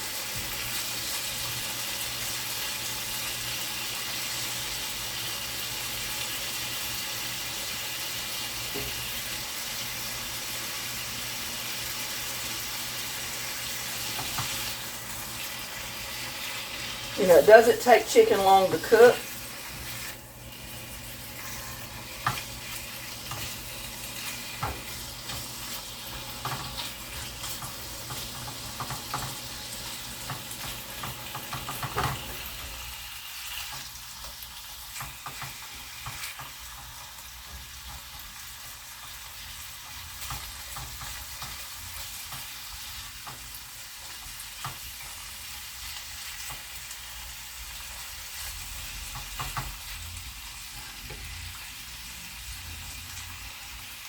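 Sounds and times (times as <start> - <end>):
chicken sizzling in a frying pan: 0.0 - 54.0
utensil scraping a pan: 19.6 - 29.3.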